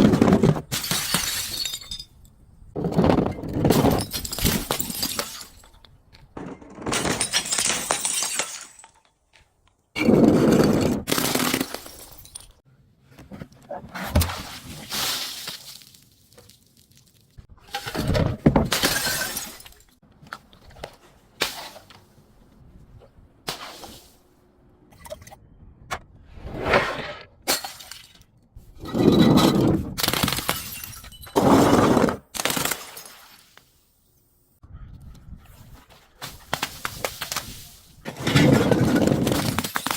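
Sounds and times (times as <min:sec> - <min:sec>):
glass bottles shattering: 0:00.7 - 0:02.2, 0:03.4 - 0:05.8, 0:06.9 - 0:09.1, 0:10.7 - 0:12.6, 0:17.7 - 0:20.0, 0:27.5 - 0:28.2, 0:28.9 - 0:31.8, 0:38.2 - 0:39.9.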